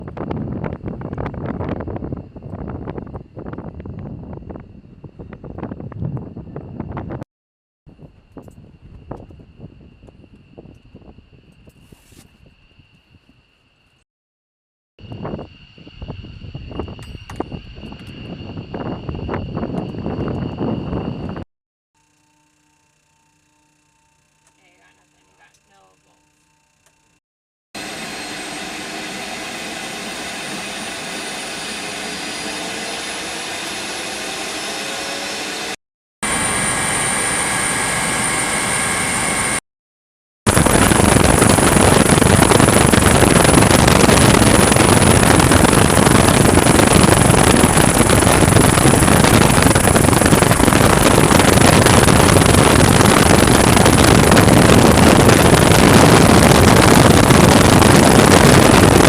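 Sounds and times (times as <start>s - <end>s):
helicopter turbine whine: 0.0s - 7.2s, 15.0s - 27.2s, 27.8s - 39.6s, 40.5s - 59.0s
helicopter rotor noise: 15.0s - 21.4s, 27.8s - 39.6s, 40.5s - 59.0s.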